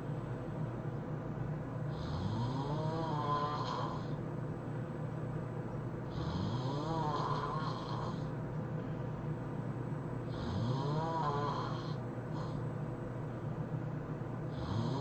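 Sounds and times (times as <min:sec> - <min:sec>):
man snoring heavily: 0:01.9 - 0:04.2, 0:06.1 - 0:08.3, 0:10.3 - 0:12.6, 0:14.5 - 0:15.0.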